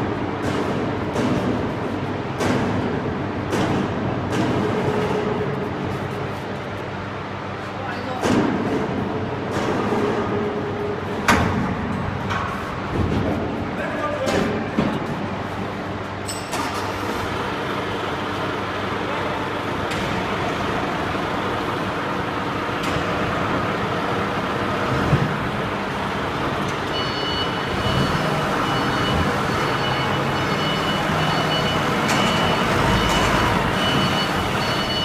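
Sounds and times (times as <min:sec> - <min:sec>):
heavy vehicle engine running: 0:15.0 - 0:35.0
reversing alarm beeping: 0:26.8 - 0:35.0.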